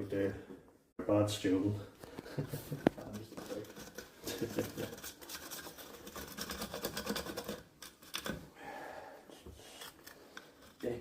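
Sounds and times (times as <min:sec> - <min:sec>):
hand tool scraping plastic: 0:02.0 - 0:08.5, 0:09.5 - 0:11.0.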